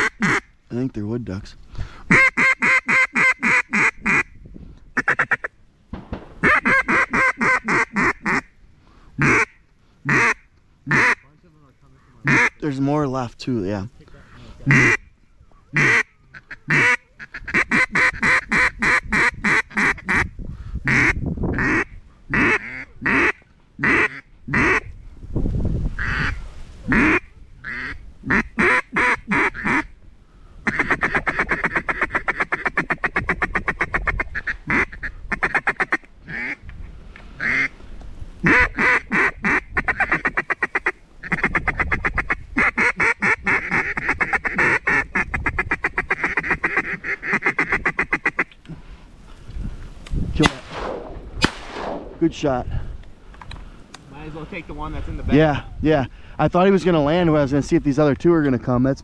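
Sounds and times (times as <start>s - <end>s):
duck call quacks: 0.0s - 0.5s, 2.1s - 4.3s, 5.0s - 5.5s, 6.4s - 8.5s, 9.2s - 11.2s, 12.2s - 12.6s, 14.7s - 15.1s, 15.7s - 20.3s, 20.9s - 24.9s, 26.0s - 29.9s, 30.6s - 36.6s, 37.4s - 37.7s, 38.4s - 48.5s
duck call feed chatter: 2.1s - 4.2s, 9.2s - 11.2s, 12.2s - 12.6s, 14.3s - 15.1s, 15.7s - 20.3s, 20.9s - 24.9s, 26.0s - 29.9s, 30.7s - 36.6s, 38.4s - 48.5s.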